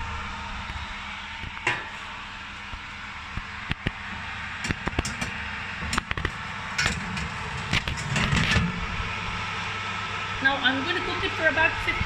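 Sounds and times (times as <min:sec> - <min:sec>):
steady hum: 0:00.0 - 0:12.0.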